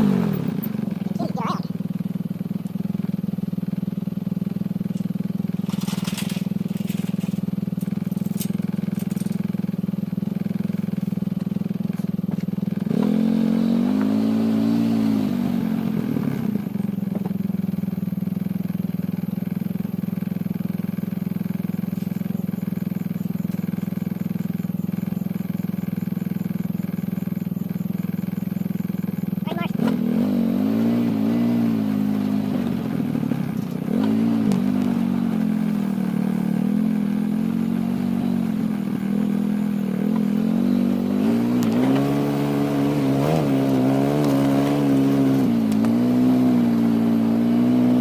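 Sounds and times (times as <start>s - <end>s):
small engine running: 0.0s - 48.0s
light clatters: 4.9s - 9.4s.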